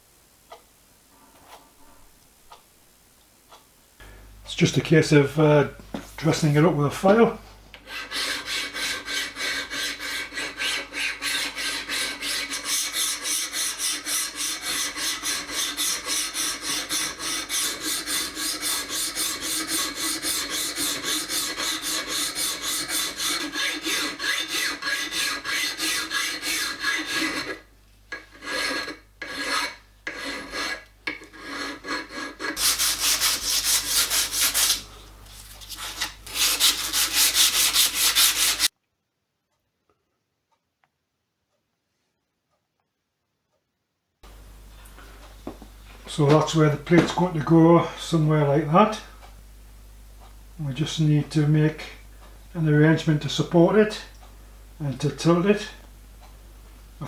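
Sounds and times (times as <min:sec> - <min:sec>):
hand file rasping on metal: 0:07.8 - 0:38.7.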